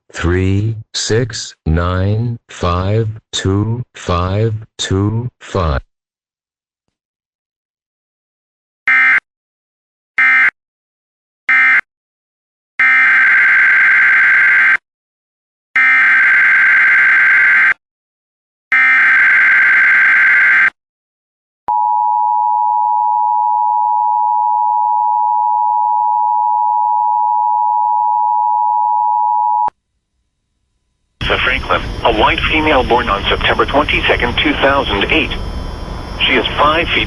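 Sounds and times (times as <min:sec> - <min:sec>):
digital data bursts: 0:31.3 - 0:37.0.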